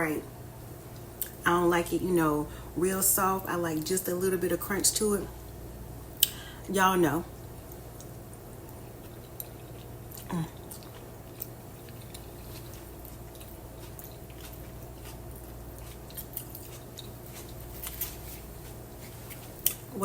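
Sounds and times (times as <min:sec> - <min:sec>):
low electrical hum: 0:00.0 - 0:20.0
person chewing spaghetti: 0:07.4 - 0:19.9
person humming mm: 0:10.2 - 0:10.7.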